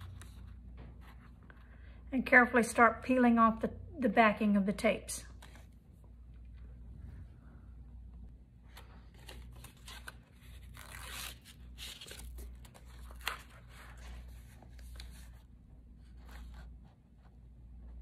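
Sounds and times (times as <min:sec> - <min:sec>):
tape backing peeling and crinkling: 0:09.1 - 0:15.3.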